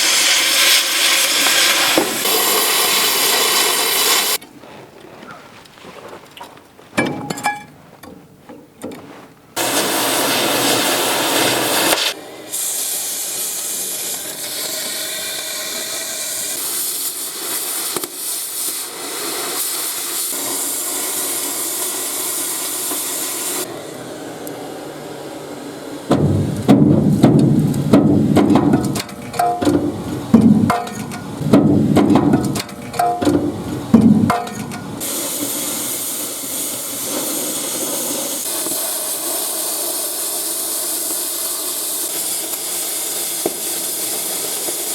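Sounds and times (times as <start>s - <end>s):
cutting torch hissing: 0.0s - 4.4s, 9.6s - 44.9s
heavy metal clanks: 7.0s - 9.0s, 26.1s - 35.0s.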